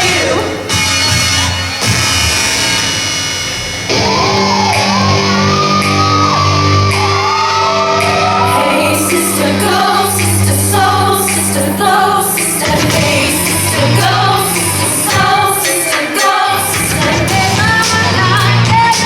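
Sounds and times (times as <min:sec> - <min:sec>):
loud music: 0:00.0 - 0:19.0
sustained bass notes: 0:00.0 - 0:19.0
sliding sung vocal: 0:08.0 - 0:19.0.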